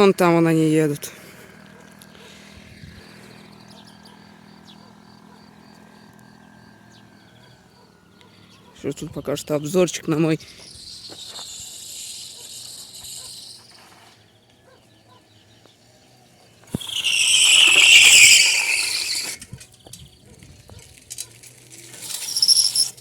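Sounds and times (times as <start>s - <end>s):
crickets chirping: 10.2s - 14.0s, 16.7s - 19.4s, 22.0s - 23.0s
bicycle tyre squealing in a skid: 10.4s - 14.2s, 16.7s - 19.7s, 21.8s - 23.0s.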